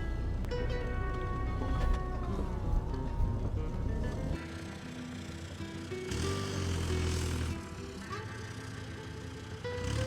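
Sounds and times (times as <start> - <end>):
background music: 0.0 - 10.0
low rumble: 1.0 - 4.4.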